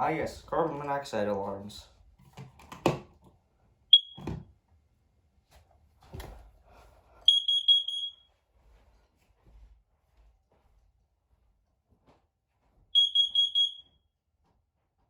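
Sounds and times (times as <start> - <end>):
alarm high beeps: 3.9 - 4.2, 7.3 - 8.2, 13.0 - 13.8
alarm high-pitched chirp: 3.9 - 4.2, 7.3 - 8.2, 13.0 - 13.9.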